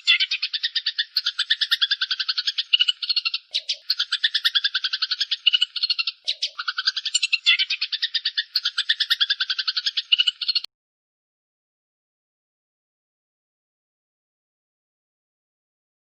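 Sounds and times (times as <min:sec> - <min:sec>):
sparrows chattering harshly: 0:00.0 - 0:10.7.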